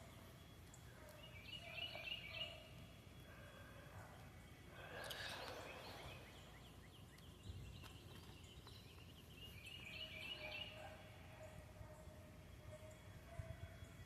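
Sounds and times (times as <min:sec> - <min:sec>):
faint birds calling: 0:00.0 - 0:14.0.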